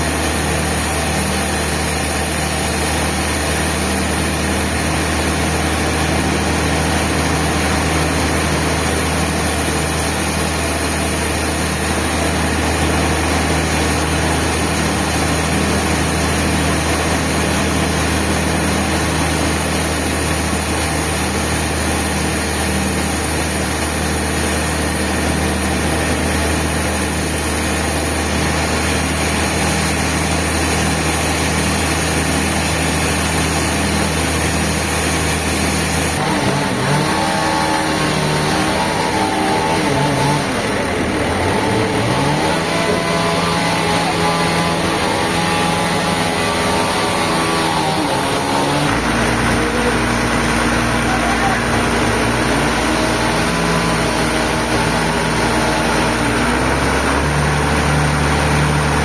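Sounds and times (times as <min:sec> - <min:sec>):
sawmill machine hum: 0:00.0 - 0:59.0.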